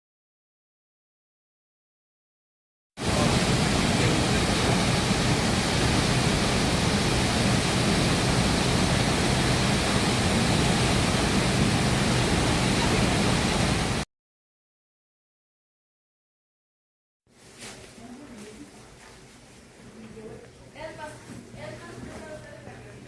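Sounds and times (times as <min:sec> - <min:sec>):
waterfall rushing: 0:03.0 - 0:14.0.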